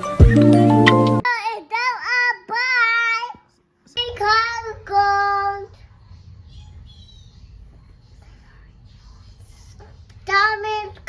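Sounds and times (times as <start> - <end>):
child singing high notes: 1.2 - 5.8
faint low hum: 3.4 - 11.0.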